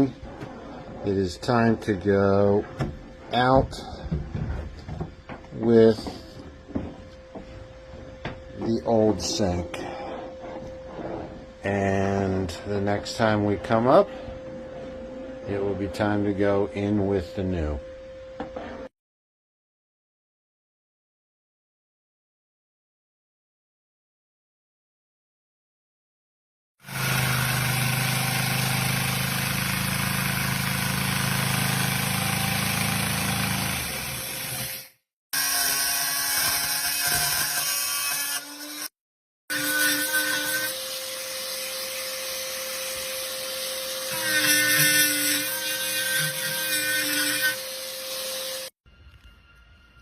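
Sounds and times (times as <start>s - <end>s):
power tool motor whine: 26.8s - 35.0s, 40.4s - 48.8s.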